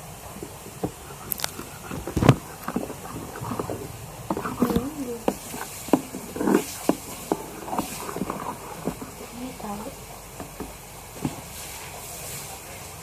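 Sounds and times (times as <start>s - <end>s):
spoon stirring wet slime: 0.4s - 10.6s.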